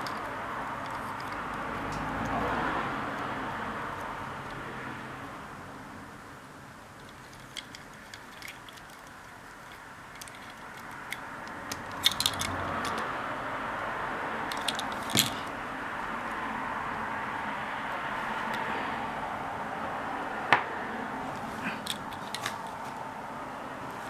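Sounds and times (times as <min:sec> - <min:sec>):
clicks of small parts handled: 0:07.0 - 0:13.1, 0:14.5 - 0:15.5, 0:21.7 - 0:23.0.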